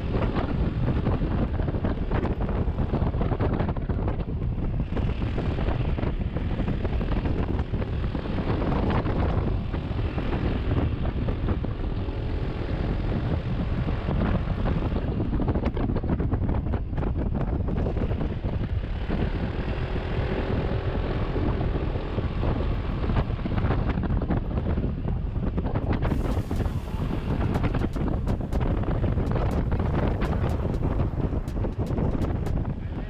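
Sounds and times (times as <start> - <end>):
motorcycle running: 0.0 - 33.0
wind buffeting microphone: 0.0 - 33.0.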